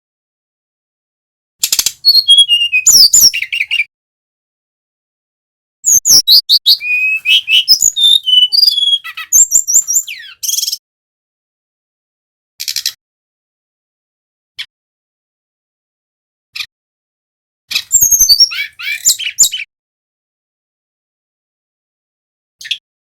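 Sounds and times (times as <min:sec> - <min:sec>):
bird singing whistled notes: 0:02.0 - 0:03.9, 0:05.8 - 0:10.8, 0:17.9 - 0:19.7.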